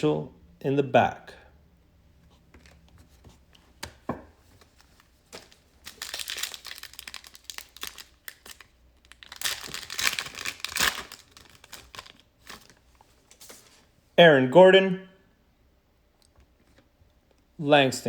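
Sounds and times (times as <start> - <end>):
wrapper tearing and crinkling: 4.8 - 12.9.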